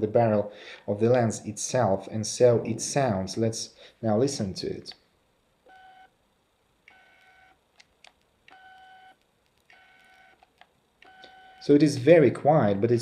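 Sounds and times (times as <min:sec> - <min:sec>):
lens focus motor whirring: 0:06.9 - 0:11.7.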